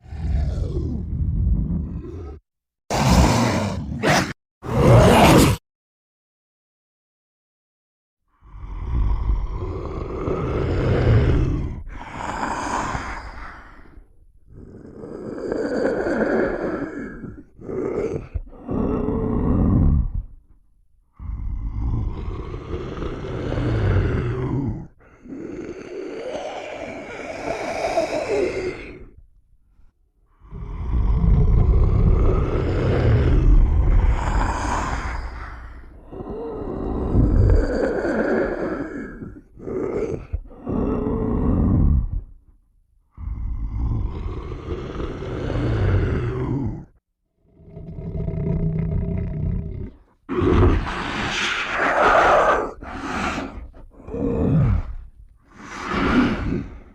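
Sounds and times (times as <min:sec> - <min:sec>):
person growling like a monster: 0:00.0 - 0:05.6, 0:08.3 - 0:29.3, 0:30.3 - 0:56.9
breathy wheezing exhale: 0:08.4 - 0:20.3, 0:21.2 - 0:29.2, 0:30.4 - 0:42.3, 0:49.9 - 0:56.9.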